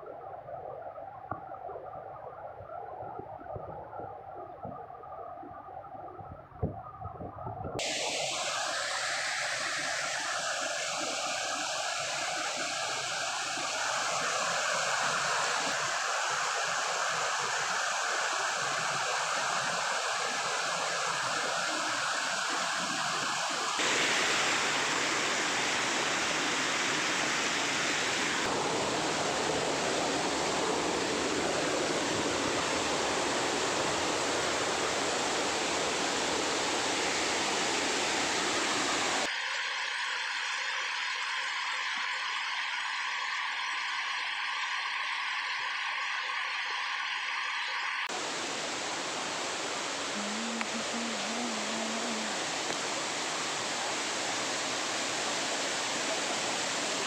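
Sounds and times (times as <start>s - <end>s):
waterfall rushing: 7.8s - 39.3s, 48.1s - 57.0s.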